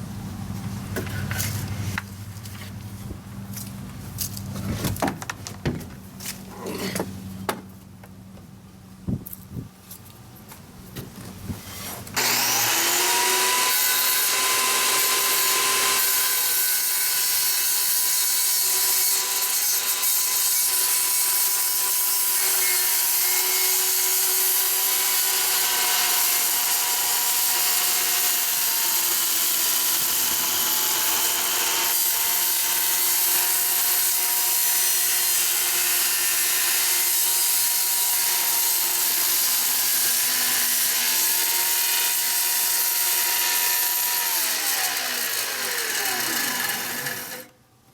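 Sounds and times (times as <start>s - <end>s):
power saw cutting wood: 11.7s - 47.6s.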